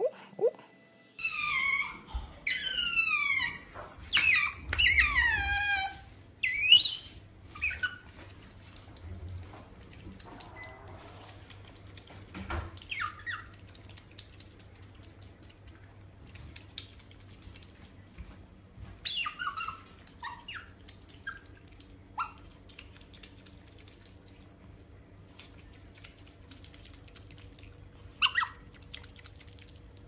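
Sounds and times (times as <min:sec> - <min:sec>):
faint low hum: 0:00.0 - 0:30.0
animal high squeaky calls: 0:01.2 - 0:08.0, 0:19.0 - 0:20.8.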